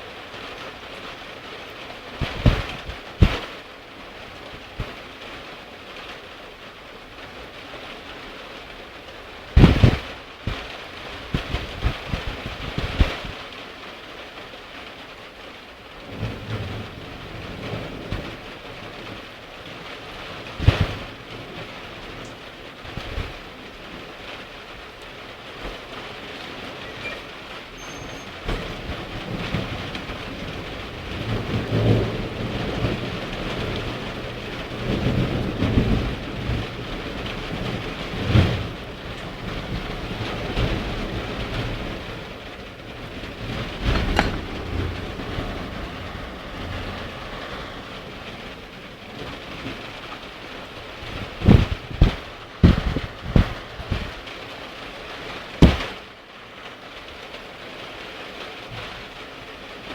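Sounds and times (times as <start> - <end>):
steady rain: 0.0 - 59.9
thunder rumbling: 16.0 - 54.4
sharp bangs: 55.6 - 56.0.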